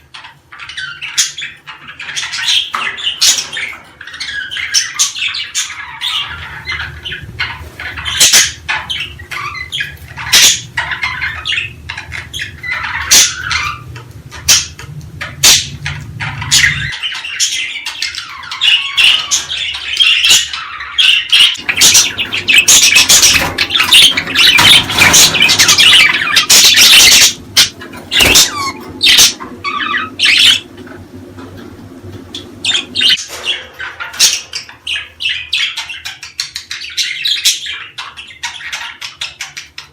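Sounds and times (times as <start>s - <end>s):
budgerigars chattering: 0.0s - 31.1s, 32.1s - 39.9s.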